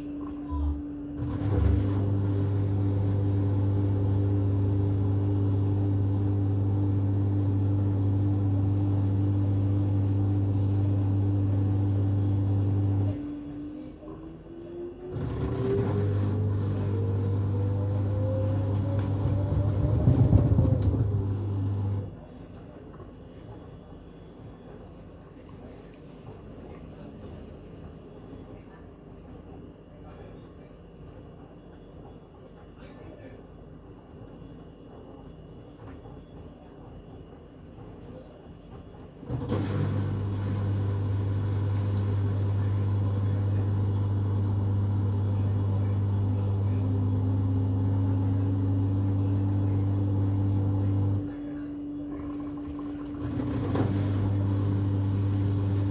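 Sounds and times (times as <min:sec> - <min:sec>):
washing machine motor whine: 0:00.0 - 0:55.9.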